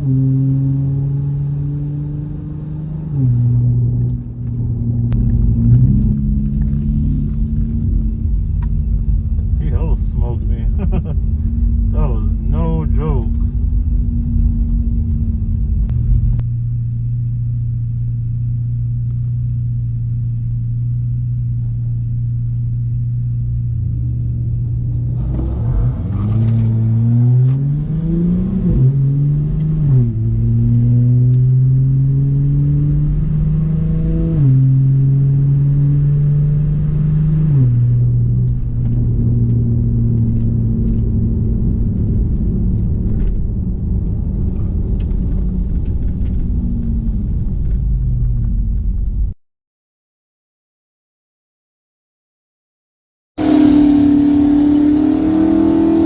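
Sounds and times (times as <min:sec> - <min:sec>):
car engine accelerating through gears: 0:00.0 - 0:16.4, 0:24.9 - 0:48.4, 0:53.4 - 0:56.0.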